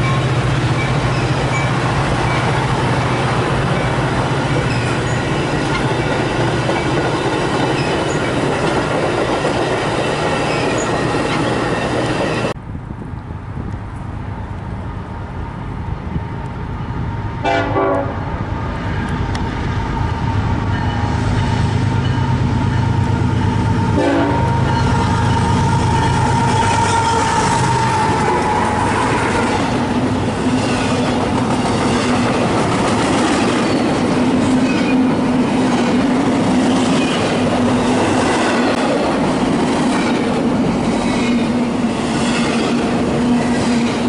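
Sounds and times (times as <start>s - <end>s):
train rolling noise: 0.0s - 44.0s
train horn toots: 17.4s - 18.3s, 20.1s - 29.8s.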